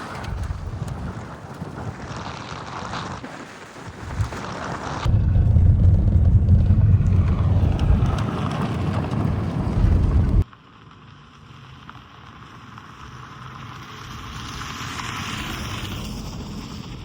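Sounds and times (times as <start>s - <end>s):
low rumble of vehicle driving: 5.1s - 10.5s.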